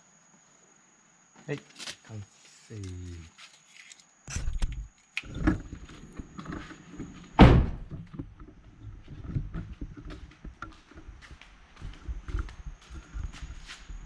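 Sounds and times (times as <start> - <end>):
heavy thunk: 7.4 - 8.0.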